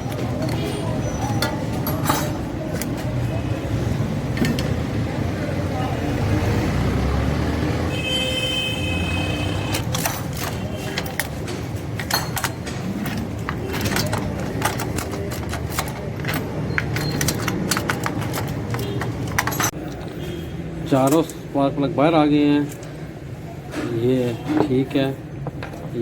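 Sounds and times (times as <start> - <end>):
metal hand tools clinking: 0.0 - 3.1, 9.8 - 20.2.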